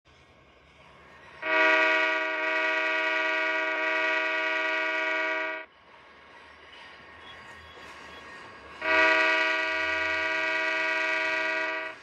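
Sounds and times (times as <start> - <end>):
train horn blast: 1.4 - 5.7, 8.8 - 12.0.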